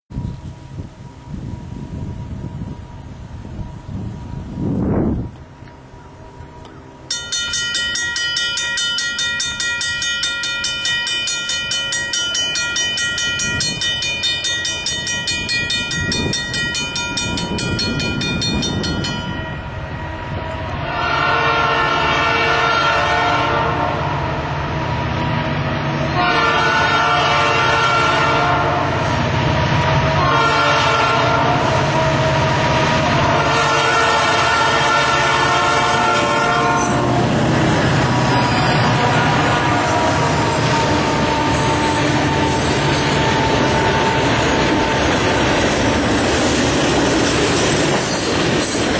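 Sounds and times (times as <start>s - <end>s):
train rumbling on rails: 0.1s - 48.9s
train horn: 19.5s - 25.0s, 26.1s - 45.2s.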